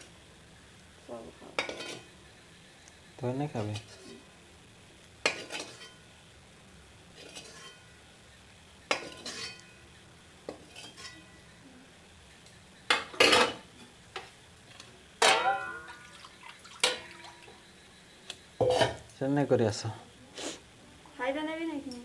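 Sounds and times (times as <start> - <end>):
metal dishes and utensils clinking: 1.6 - 2.1, 8.9 - 9.7, 10.5 - 11.3, 12.9 - 13.9, 15.2 - 17.2, 18.6 - 19.0.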